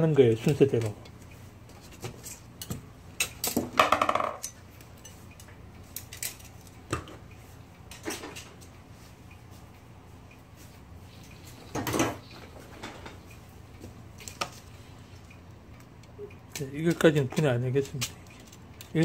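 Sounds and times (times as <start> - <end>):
metal parts clinking: 17.8 - 18.9.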